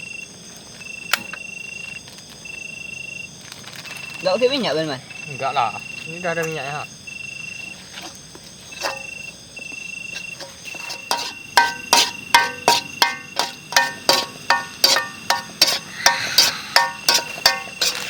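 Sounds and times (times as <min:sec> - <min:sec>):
crickets chirping: 0:00.0 - 0:18.0
metal utensil clinking on pan: 0:10.4 - 0:18.0.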